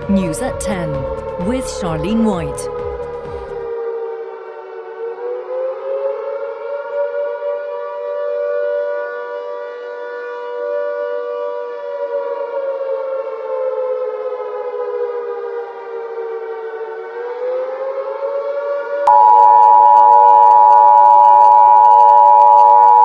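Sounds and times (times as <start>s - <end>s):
two-tone alert signal: 0.0s - 3.5s, 19.1s - 23.0s.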